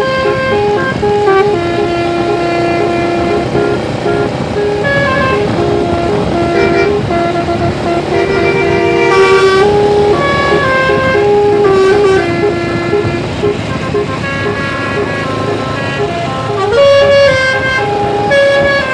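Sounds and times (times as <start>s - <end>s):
musical bus horn playing a tune: 0.0s - 18.9s.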